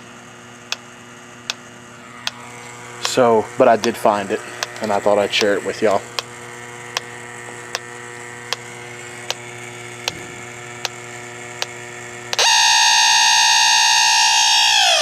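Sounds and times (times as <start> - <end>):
leak detector ticking: 0.6 - 15.0
loud steady alarm tone: 12.3 - 15.0.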